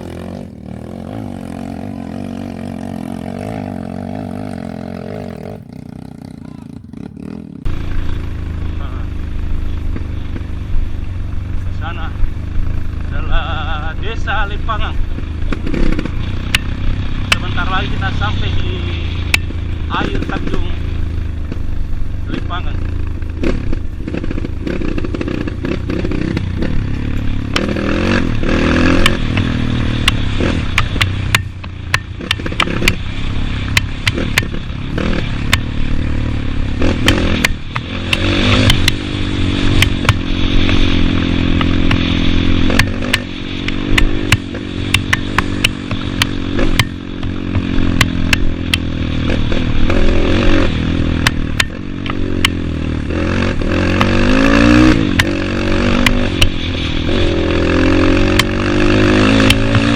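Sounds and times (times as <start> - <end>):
motorcycle engine revving: 0.0 - 59.9.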